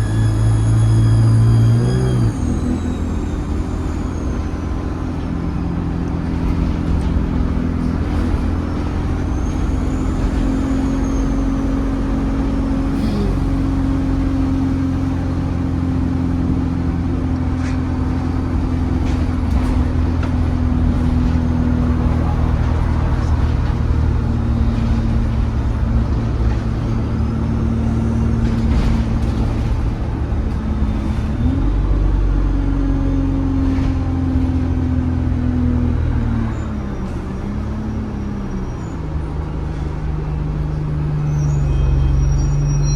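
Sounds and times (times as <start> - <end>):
turbo whistle: 0.0 - 4.5, 41.3 - 42.9
bus diesel engine drone: 0.0 - 42.9.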